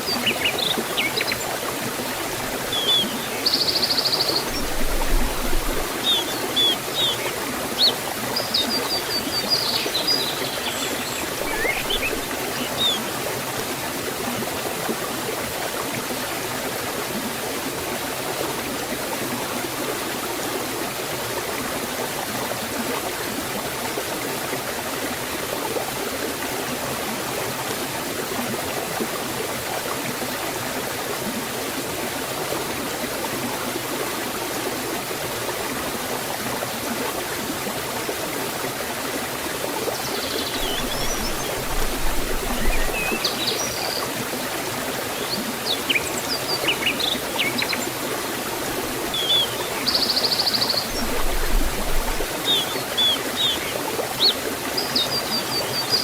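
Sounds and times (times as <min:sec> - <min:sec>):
waterfall and stream rushing: 0:00.0 - 0:56.0
small birds chirping: 0:02.4 - 0:13.1, 0:39.9 - 0:44.1, 0:45.1 - 0:47.9, 0:49.1 - 0:56.0.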